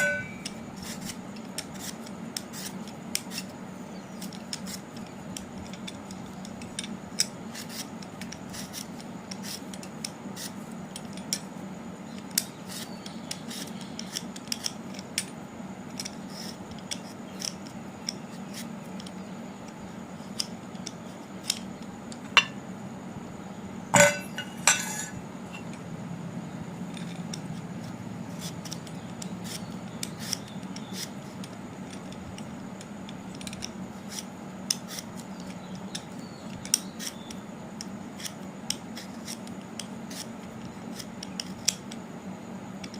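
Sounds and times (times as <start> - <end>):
kitchen utensils clicking and scraping: 0.0 - 0.5, 23.9 - 25.7
utensils clattering: 0.0 - 0.6, 23.9 - 25.7
steady low hum: 0.0 - 42.9.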